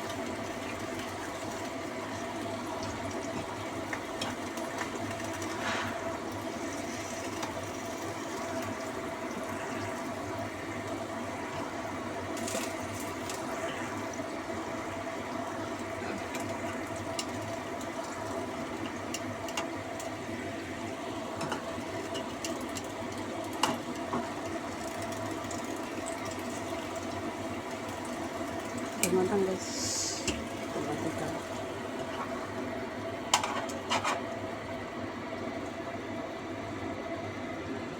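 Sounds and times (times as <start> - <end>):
vegetables boiling in a pot: 0.0 - 37.9
steady hum: 28.6 - 37.9.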